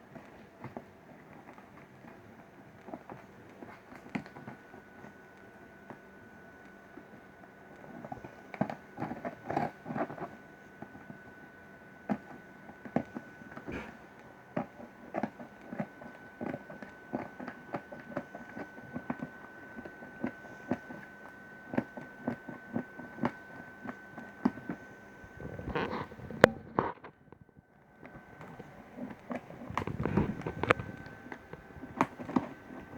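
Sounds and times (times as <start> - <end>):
packaging rustling and crinkling: 12.1 - 32.9.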